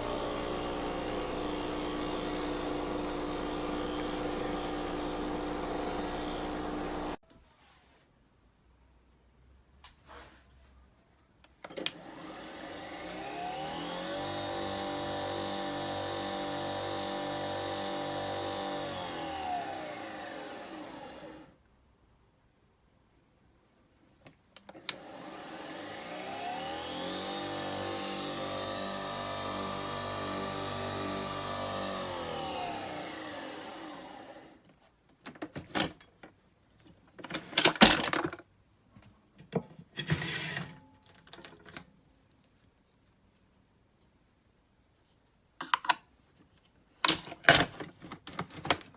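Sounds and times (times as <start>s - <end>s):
coffee machine motor whining: 0.0s - 7.2s, 11.9s - 21.5s, 24.8s - 34.6s.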